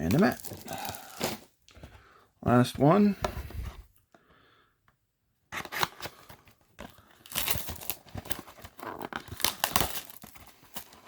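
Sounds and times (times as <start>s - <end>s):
box being torn open: 0.0s - 1.5s, 5.5s - 6.4s, 7.2s - 11.0s
packaging crinkling and rustling: 0.0s - 1.8s, 5.6s - 11.0s.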